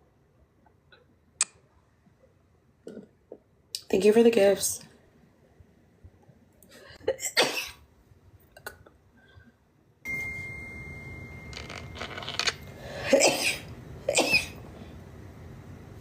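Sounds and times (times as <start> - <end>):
steady background hiss: 9.7 - 16.0
woman sneezing: 13.0 - 14.6.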